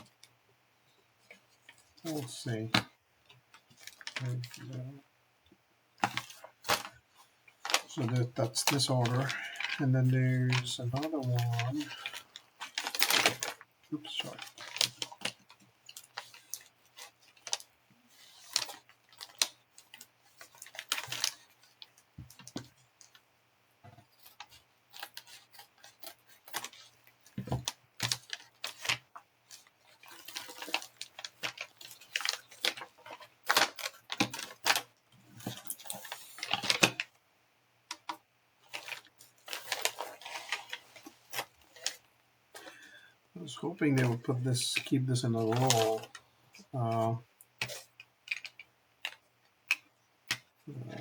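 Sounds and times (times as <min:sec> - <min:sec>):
package opening rustles: 0:07.6 - 0:23.2, 0:24.2 - 0:37.1, 0:37.9 - 0:42.8, 0:44.0 - 0:46.2, 0:46.9 - 0:50.5.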